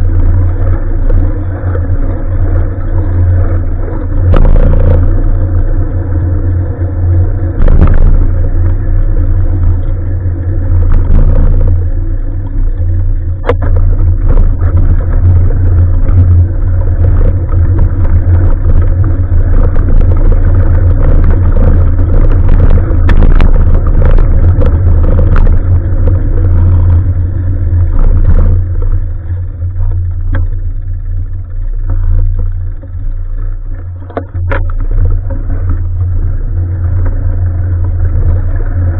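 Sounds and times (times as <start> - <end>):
wind buffeting microphone: 0.0 - 38.9
bike knocks and rattles: 27.8 - 38.9.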